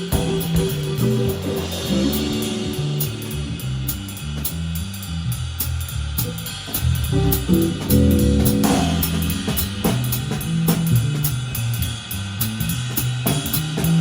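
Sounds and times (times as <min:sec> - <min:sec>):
guitar notes: 0:00.0 - 0:04.0, 0:07.2 - 0:10.4
bass guitar low notes: 0:00.0 - 0:14.0
drum cymbal strokes: 0:00.0 - 0:14.0.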